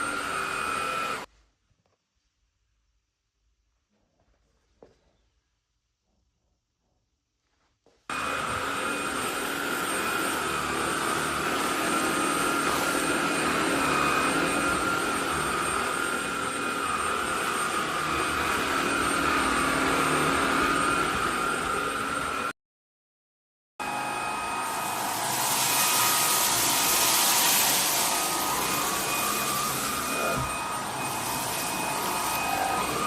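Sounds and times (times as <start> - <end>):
vacuum cleaner motor whine: 0.0 - 1.3, 8.1 - 22.5, 23.8 - 33.0.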